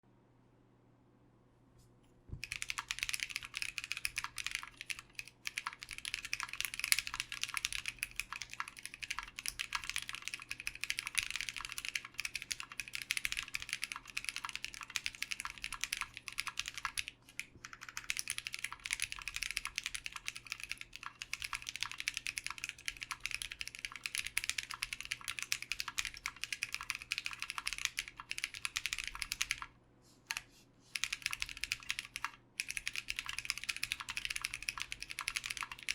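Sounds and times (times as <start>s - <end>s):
mechanical keyboard typing: 2.4s - 35.9s.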